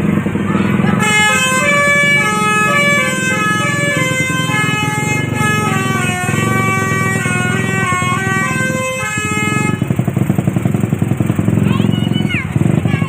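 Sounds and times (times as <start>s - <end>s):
bus engine rumbling: 0.0s - 13.0s
musical bus horn tune: 0.4s - 10.3s.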